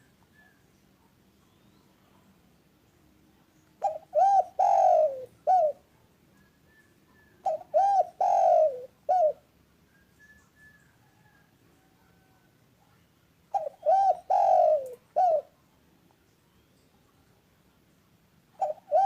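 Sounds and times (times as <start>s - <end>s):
dove cooing: 3.8s - 5.9s, 7.3s - 9.5s, 13.5s - 15.6s, 18.6s - 19.0s.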